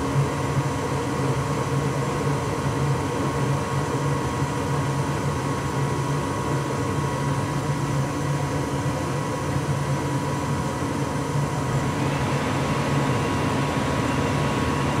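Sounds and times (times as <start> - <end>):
faint steady whine: 5.1 - 15.0
furnace burner rushing: 11.3 - 15.0.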